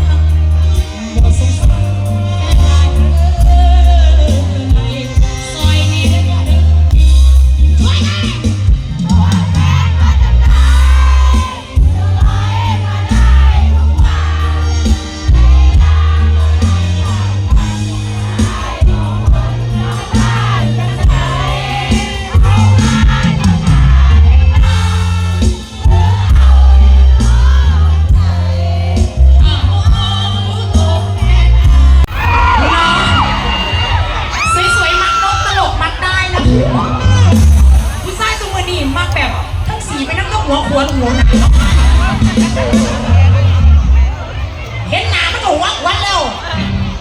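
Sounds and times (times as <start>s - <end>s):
people singing: 0.0s - 7.0s, 7.6s - 35.2s, 41.0s - 43.7s
loud music with heavy bass: 0.0s - 47.0s.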